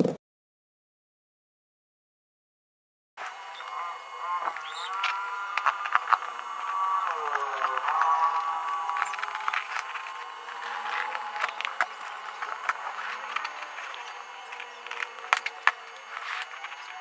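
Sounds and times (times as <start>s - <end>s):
packaging rustling and clicking: 7.5s - 17.0s.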